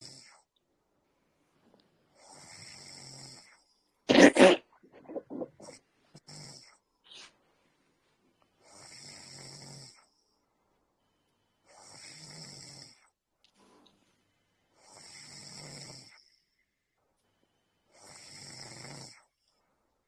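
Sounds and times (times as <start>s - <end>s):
soft snoring: 0.0s - 0.5s, 2.1s - 7.3s, 8.6s - 10.4s, 11.6s - 13.2s, 14.7s - 16.6s, 17.9s - 19.6s.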